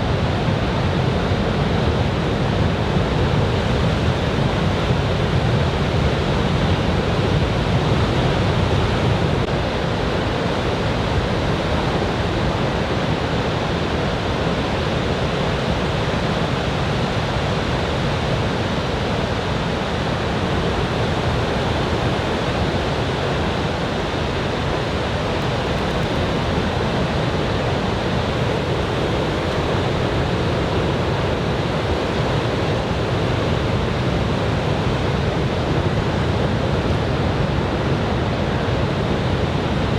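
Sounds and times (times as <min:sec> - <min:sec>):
ocean surf breaking on beach: 0:09.5 - 0:36.3.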